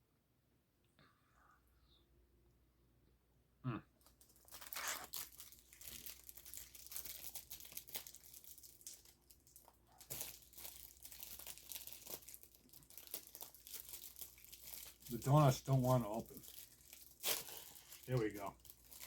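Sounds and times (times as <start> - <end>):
plastic wrapper crinkling: 4.0 - 19.0.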